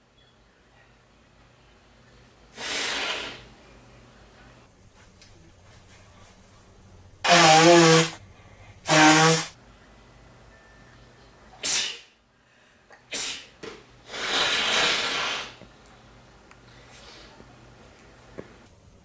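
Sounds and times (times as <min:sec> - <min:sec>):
breathy bursts of air: 0:02.5 - 0:03.5, 0:13.1 - 0:15.6
man sneezing: 0:11.6 - 0:12.1, 0:13.1 - 0:13.5.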